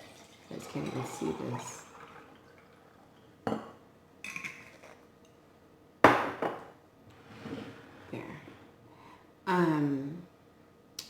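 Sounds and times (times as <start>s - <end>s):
objects knocking on a table: 6.1s - 6.8s.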